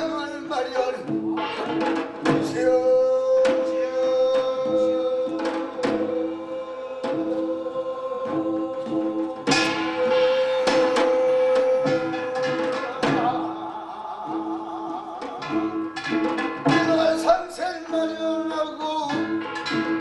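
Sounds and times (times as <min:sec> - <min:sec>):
man chanting: 0:00.0 - 0:01.1, 0:02.4 - 0:08.8, 0:09.7 - 0:15.8, 0:16.7 - 0:19.3
drum strikes: 0:00.0 - 0:20.0
gong strikes: 0:09.5 - 0:13.5.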